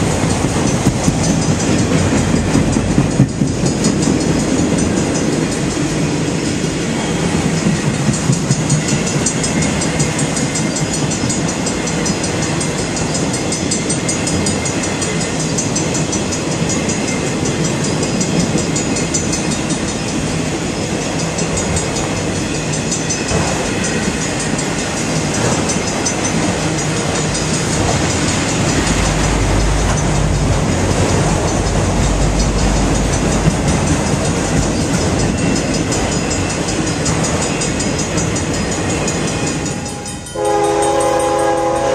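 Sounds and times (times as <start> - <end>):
train wheels clattering on rails: 0.0 - 41.9
deep low rumble: 28.7 - 34.8.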